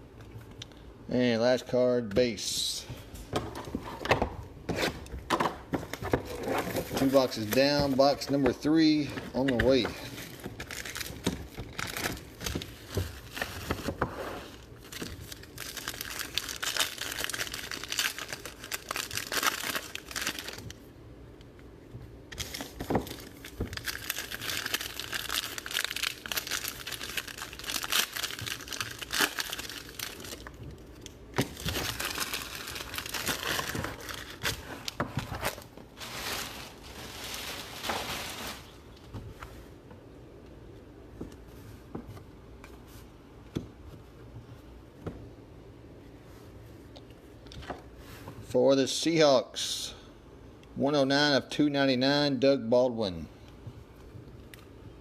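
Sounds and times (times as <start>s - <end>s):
plastic wrapping tearing and crinkling: 5.9s - 8.2s, 9.4s - 20.8s, 22.3s - 38.9s.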